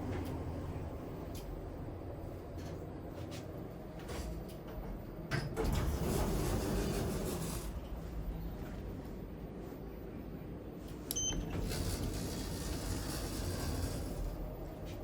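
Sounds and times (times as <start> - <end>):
lift doors sliding: 5.4 - 8.0, 11.3 - 15.0.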